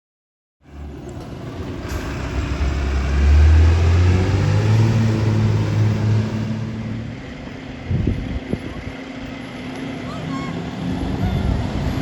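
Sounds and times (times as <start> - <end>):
diesel engine revving: 0.6 - 12.0.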